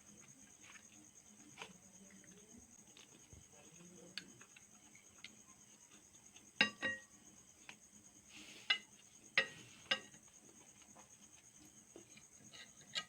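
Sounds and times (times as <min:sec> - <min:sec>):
tableware clinking: 0:06.6 - 0:07.1, 0:09.4 - 0:10.2.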